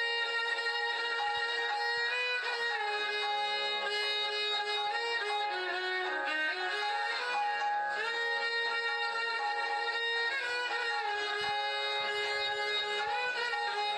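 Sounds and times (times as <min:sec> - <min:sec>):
violin melody: 0:00.0 - 0:13.9.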